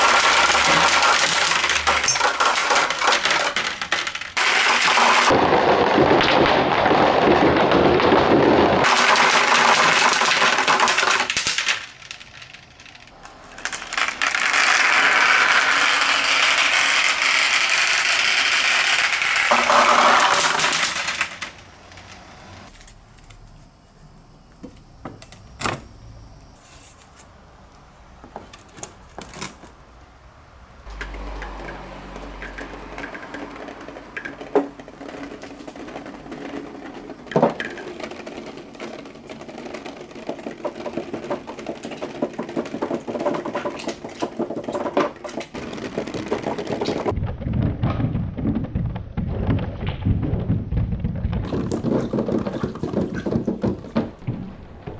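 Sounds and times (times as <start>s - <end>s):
marbles clicking on track: 0.0s - 5.4s, 8.8s - 22.3s, 30.9s - 47.2s
marbles rolling on plastic track: 0.0s - 5.4s, 7.2s - 22.7s, 30.9s - 47.2s.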